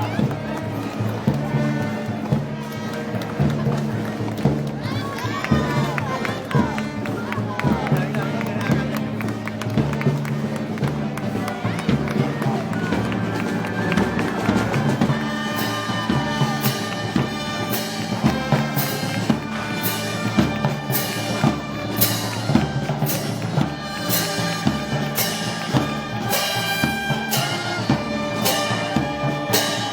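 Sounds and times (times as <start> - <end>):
brass band playing march: 0.0 - 29.9.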